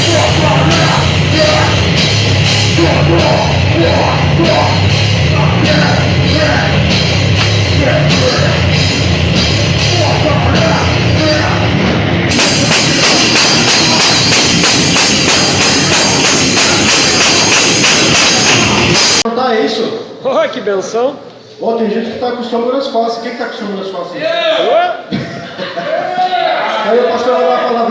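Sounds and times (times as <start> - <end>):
cymbals crashing: 0.0 - 19.3
heavy rock band playing: 0.0 - 19.3.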